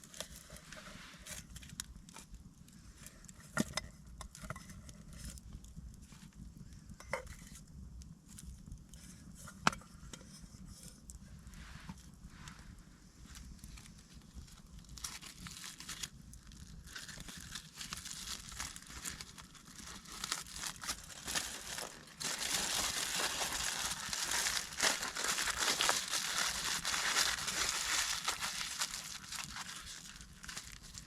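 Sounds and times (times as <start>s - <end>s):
branches and leaves crackling: 13.3s - 31.0s.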